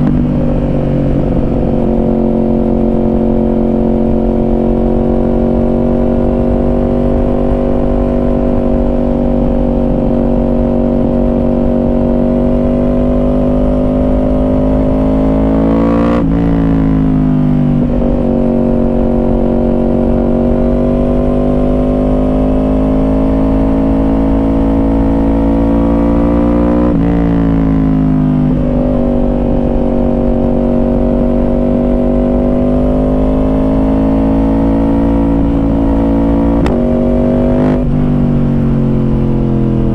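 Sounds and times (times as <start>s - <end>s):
wind rush: 0.0s - 27.6s
motorcycle engine: 0.0s - 39.9s.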